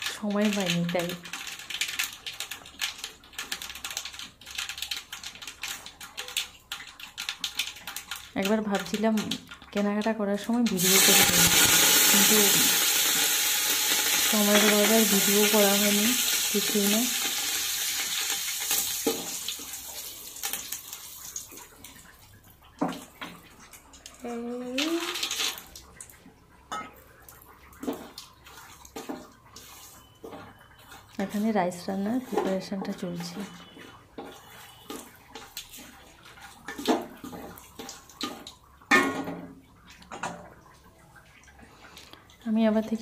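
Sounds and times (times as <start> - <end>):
water splashing in a vessel: 0.0 - 43.0
food sizzling in a pan: 10.7 - 21.2.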